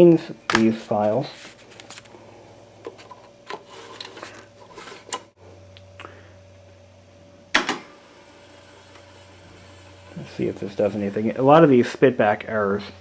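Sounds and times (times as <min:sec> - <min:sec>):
faint steady hum: 0:00.0 - 0:13.0
rubbing scrapes: 0:03.6 - 0:05.1, 0:08.2 - 0:12.0
floppy disk clicks: 0:07.5 - 0:10.6.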